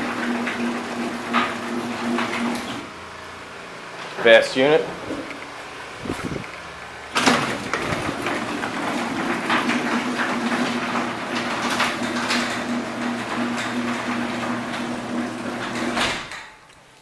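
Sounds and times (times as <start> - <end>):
garage door rattling: 0.0 - 2.9, 7.1 - 16.7
garage door opener motor hum: 0.0 - 16.9.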